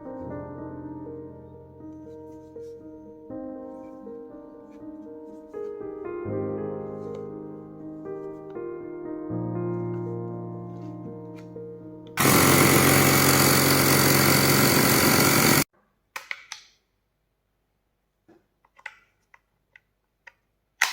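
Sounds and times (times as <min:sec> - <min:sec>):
piano music: 0:00.0 - 0:15.4
electric air compressor running: 0:12.2 - 0:15.7.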